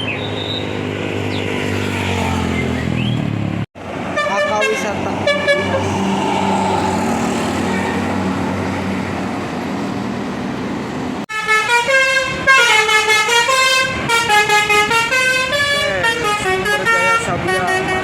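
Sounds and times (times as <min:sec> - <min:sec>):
bus engine running: 0:00.0 - 0:18.0
multi-tone bus horn melody: 0:04.0 - 0:06.2, 0:07.6 - 0:09.4, 0:11.2 - 0:18.0.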